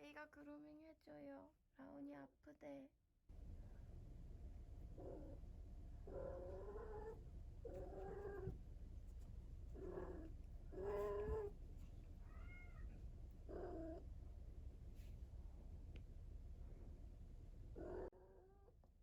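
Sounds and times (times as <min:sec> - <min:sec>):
cat yowling: 0:09.8 - 0:11.5, 0:12.2 - 0:14.0.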